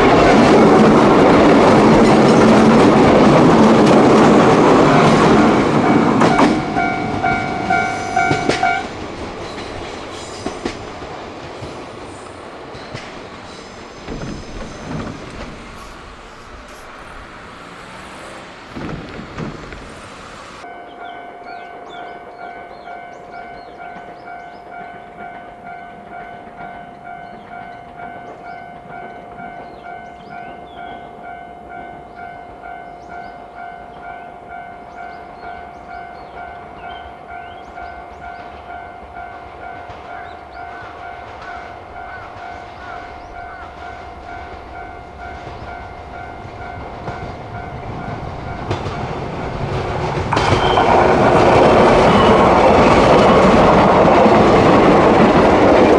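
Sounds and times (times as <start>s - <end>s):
level crossing warning bell: 0.0s - 10.1s, 20.4s - 54.7s
train wheels rumbling: 0.0s - 55.9s.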